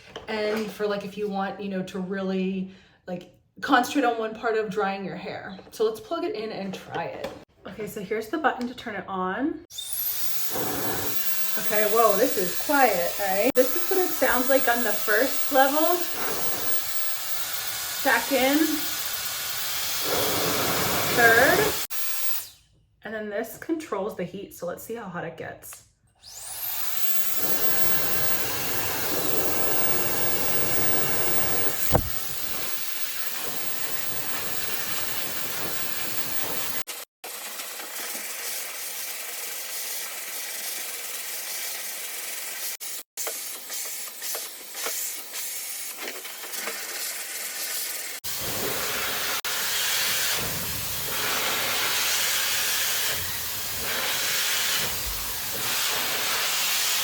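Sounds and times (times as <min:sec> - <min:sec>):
hair dryer blowing: 0:09.8 - 0:22.5, 0:26.2 - 0:36.9, 0:48.1 - 0:57.0.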